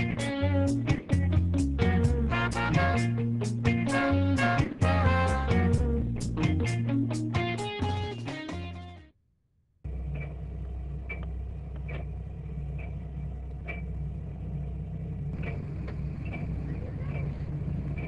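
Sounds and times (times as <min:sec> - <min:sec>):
background music: 0:00.0 - 0:09.1
boat engine rumbling: 0:09.9 - 0:18.0.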